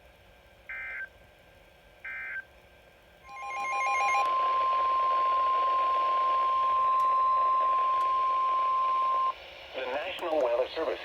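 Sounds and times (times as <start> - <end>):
radio static hiss: 8.6 - 11.0.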